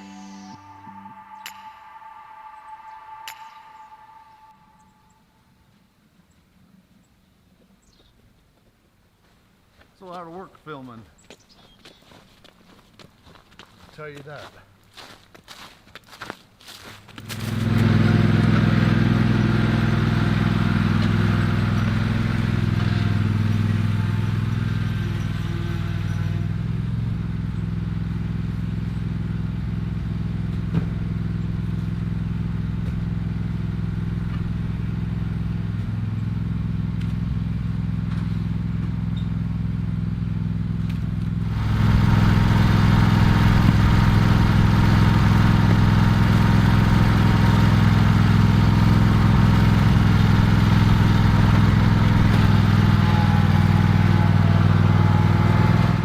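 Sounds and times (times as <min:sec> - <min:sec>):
engine running steadily: 0:17.2 - 0:56.0.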